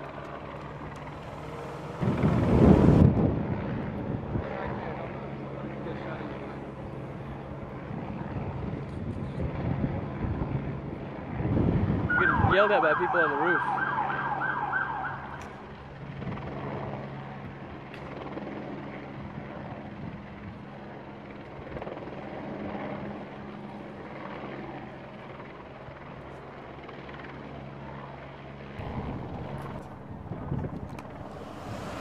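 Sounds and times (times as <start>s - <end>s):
street noise: 0.0s - 18.2s, 28.8s - 32.0s
helicopter drone overhead: 0.0s - 32.0s
wailing siren: 0.2s - 3.9s, 12.0s - 15.6s.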